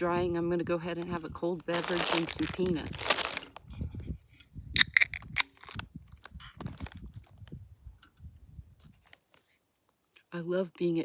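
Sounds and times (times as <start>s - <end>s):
peanut shells cracking: 1.7s - 3.6s, 4.8s - 5.8s
shells rustling: 1.7s - 3.6s, 4.8s - 5.8s.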